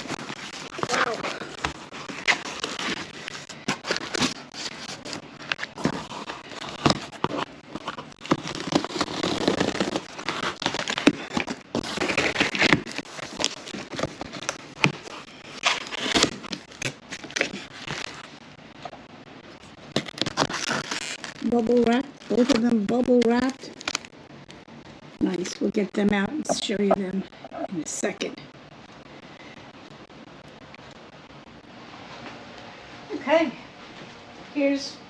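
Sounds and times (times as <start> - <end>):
cardboard tearing: 0.0 - 18.2, 20.0 - 21.5
plastic crinkling: 0.0 - 18.4, 19.6 - 24.6.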